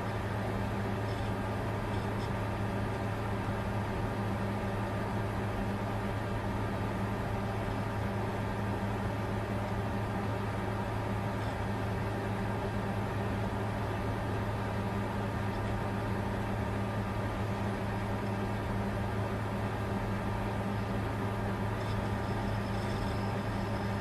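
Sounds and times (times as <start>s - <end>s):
computer low hum: 6.4s - 24.0s.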